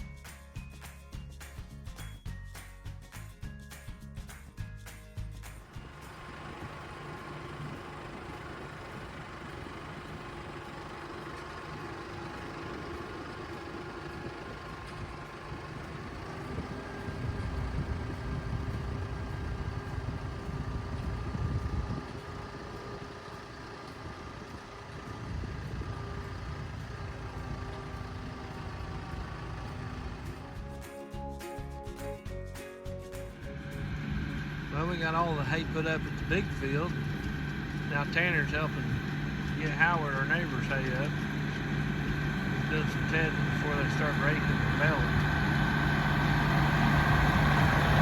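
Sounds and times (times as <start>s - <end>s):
vehicle engine running: 0.0s - 48.0s.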